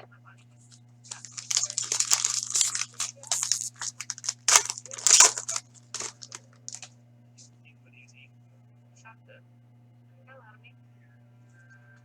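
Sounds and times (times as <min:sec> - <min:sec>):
card pack wrapper crinkling and tearing: 0:01.1 - 0:06.9.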